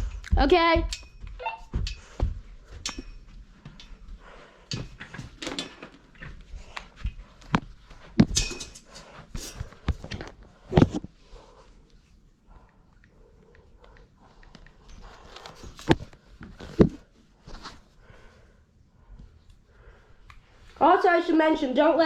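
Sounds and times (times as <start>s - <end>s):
objects knocking and thudding: 4.7s - 11.1s, 15.6s - 17.1s.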